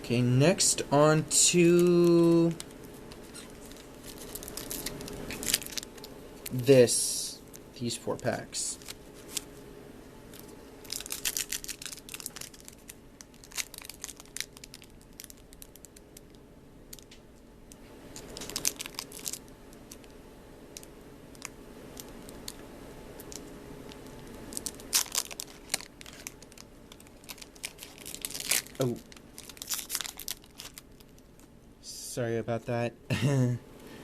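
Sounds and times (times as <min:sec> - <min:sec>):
foil wrappers tearing and crinkling: 0:01.5 - 0:06.6, 0:08.3 - 0:09.5, 0:10.3 - 0:17.1, 0:18.1 - 0:20.1, 0:23.2 - 0:31.4.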